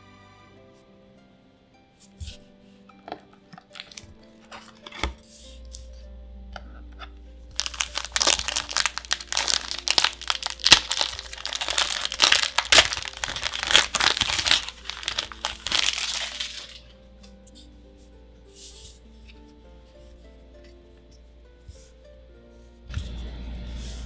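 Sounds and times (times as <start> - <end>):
soft background music: 0.0 - 24.0
foil wrapper crinkling: 3.6 - 5.2, 7.5 - 16.9.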